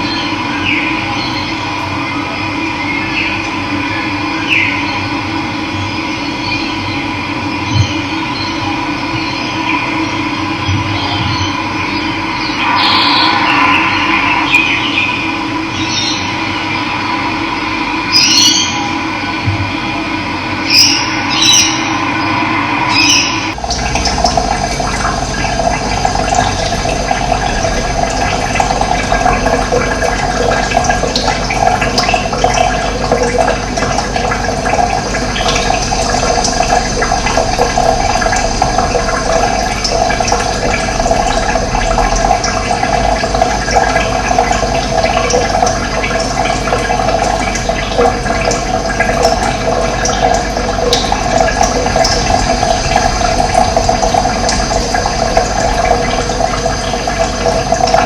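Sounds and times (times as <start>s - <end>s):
water rushing: 11.7s - 19.4s, 20.4s - 58.0s.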